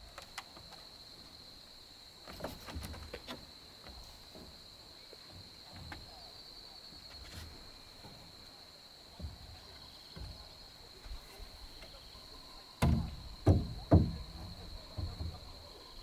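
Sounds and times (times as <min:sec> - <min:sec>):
soft thumps: 0:09.1 - 0:12.0, 0:12.8 - 0:16.0
heavy knocks: 0:12.8 - 0:15.8.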